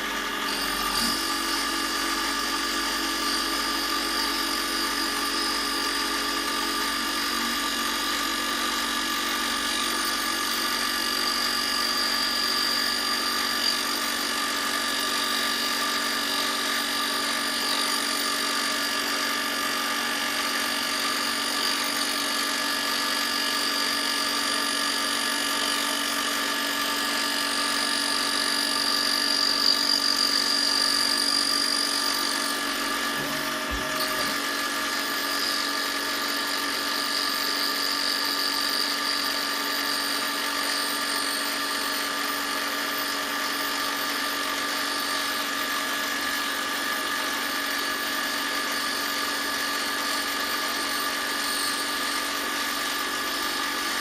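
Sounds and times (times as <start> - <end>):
power tool motor whine: 0.0 - 54.0.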